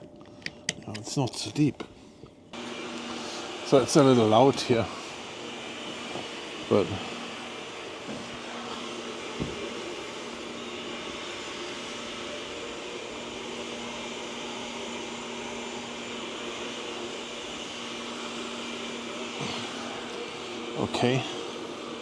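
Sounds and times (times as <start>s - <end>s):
steady mechanical hum: 0.0s - 22.0s.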